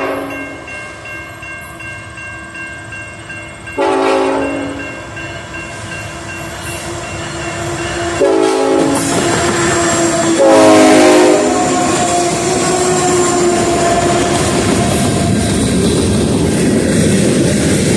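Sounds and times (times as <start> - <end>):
locomotive horn blasts: 0.0 - 0.5, 3.8 - 4.9, 6.7 - 15.2
train wheels rumbling on rails: 0.0 - 17.9.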